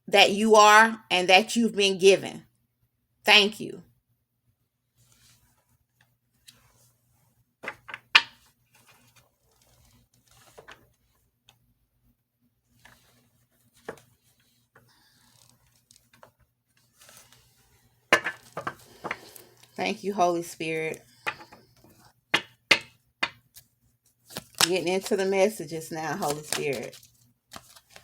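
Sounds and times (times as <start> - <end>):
faint card rustling: 4.9 - 11.7, 12.7 - 19.8, 23.5 - 28.0
cards tapping and slapping: 7.6 - 10.9, 13.8 - 14.2, 18.1 - 19.4, 21.2 - 23.7, 24.3 - 25.2, 26.1 - 28.0.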